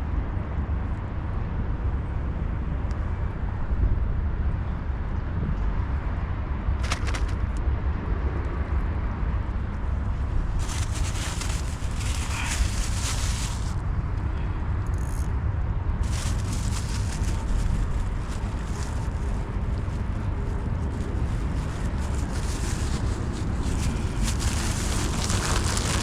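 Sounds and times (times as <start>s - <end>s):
wind buffeting microphone: 15.4s - 26.0s.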